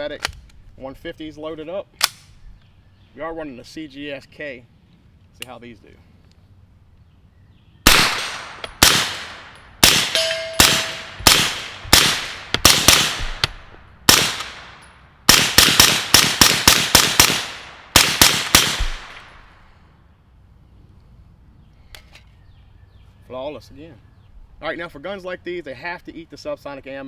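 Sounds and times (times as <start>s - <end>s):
suppressed gunshots: 7.9s - 19.5s.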